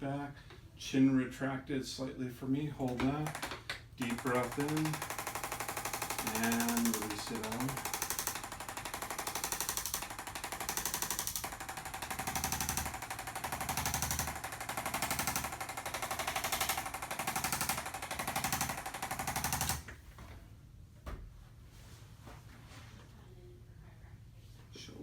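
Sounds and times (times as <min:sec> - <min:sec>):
rapid mechanical pulsing: 0:02.8 - 0:20.0.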